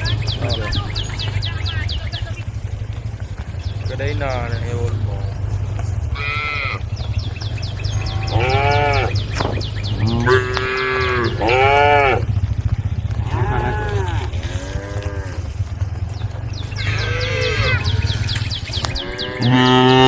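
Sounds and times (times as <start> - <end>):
steady low hum: 0.0 - 20.0
cattle mooing: 6.1 - 12.3, 13.2 - 15.8, 16.7 - 20.0.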